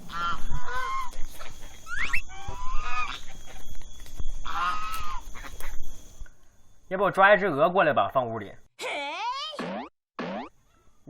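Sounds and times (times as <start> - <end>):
geese honking: 0.0 - 1.6.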